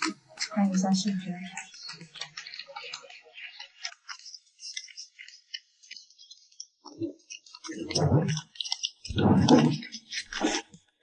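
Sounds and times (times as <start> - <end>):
person speaking: 0.0 - 3.9, 7.7 - 8.4.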